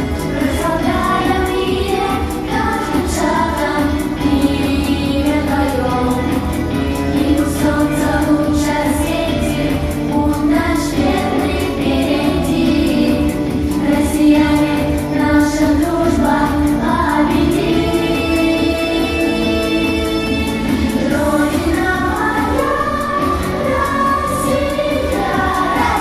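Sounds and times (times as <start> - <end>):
choir singing: 0.0 - 26.0
music with steady beat: 0.0 - 26.0.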